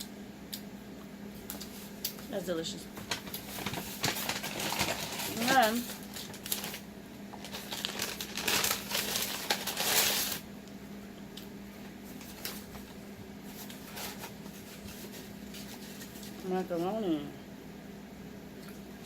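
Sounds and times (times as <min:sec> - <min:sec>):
food packaging crinkling: 0:02.9 - 0:10.5, 0:12.1 - 0:16.4.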